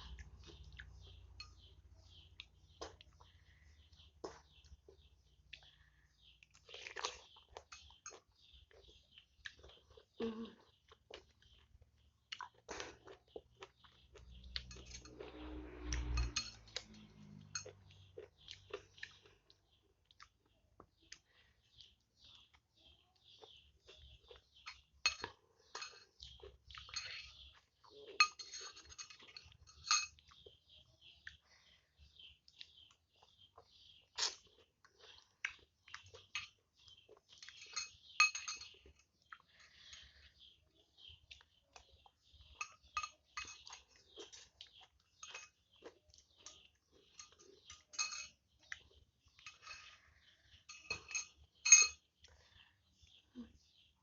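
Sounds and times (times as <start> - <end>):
chewing and mouth noises: 0.0 - 53.2
cutlery clinking against bowl: 14.6 - 17.9, 24.6 - 30.4, 37.3 - 39.0, 42.5 - 50.0, 50.6 - 52.0.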